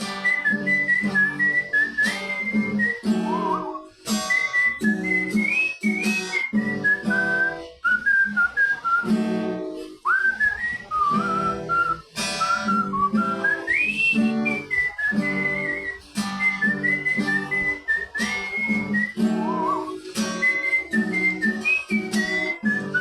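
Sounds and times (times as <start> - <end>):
plucked acoustic guitar: 0.0 - 23.0
whistled melody: 0.0 - 23.0.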